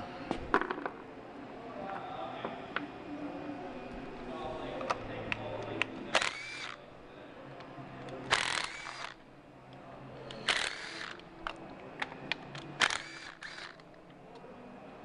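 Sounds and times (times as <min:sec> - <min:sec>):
power ratchet whirring: 0:06.1 - 0:06.8, 0:08.3 - 0:09.2, 0:10.3 - 0:11.2, 0:12.8 - 0:13.8.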